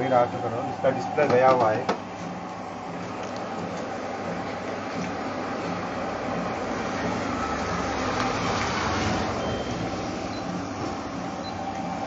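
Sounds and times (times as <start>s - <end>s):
road traffic noise: 2.8s - 12.0s
vehicle passing: 6.2s - 11.2s.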